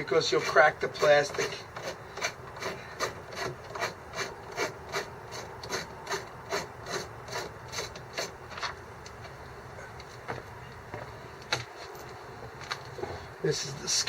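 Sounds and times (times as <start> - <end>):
hand ratchet rasping strokes: 0.0 - 8.7.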